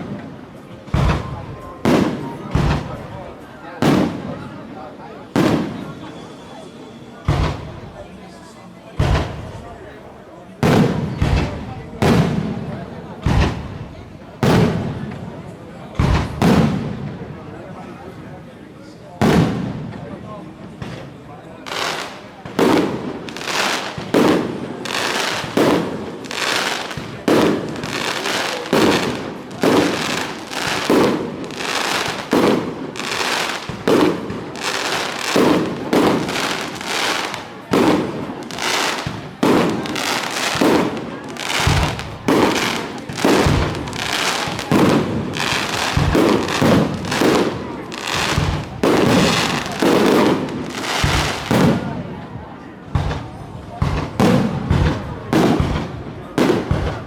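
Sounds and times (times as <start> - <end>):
deep fireworks booms: 0.0 - 4.6, 5.2 - 6.1, 7.2 - 8.2, 8.9 - 17.7, 19.2 - 21.1, 22.0 - 57.0
fireworks crackling: 0.0 - 57.0
fireworks shells bursting: 7.2 - 8.1, 21.7 - 51.8.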